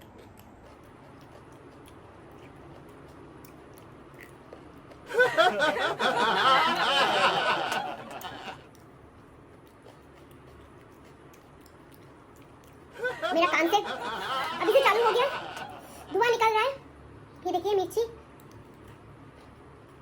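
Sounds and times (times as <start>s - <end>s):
person chewing: 0.0s - 5.1s, 8.2s - 13.5s, 18.3s - 20.0s.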